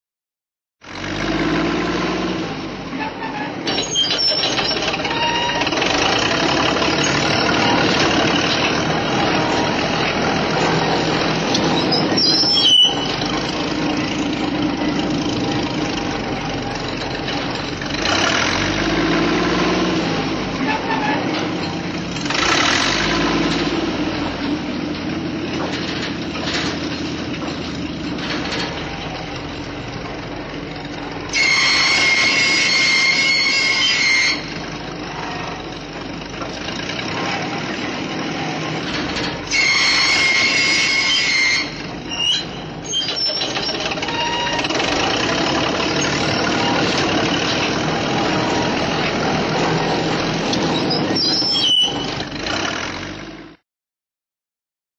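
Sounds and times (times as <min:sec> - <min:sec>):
heavy bulldozer engine running: 0:00.8 - 0:53.6
high squeals: 0:02.9 - 0:14.3, 0:31.3 - 0:35.7, 0:39.2 - 0:52.3
metallic clanking: 0:03.6 - 0:19.1, 0:20.4 - 0:52.4.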